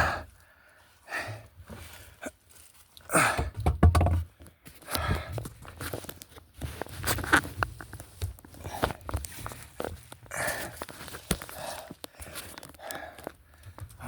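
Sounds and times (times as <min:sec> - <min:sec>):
man panting: 0:03.1 - 0:03.6, 0:10.3 - 0:10.8, 0:11.4 - 0:13.6.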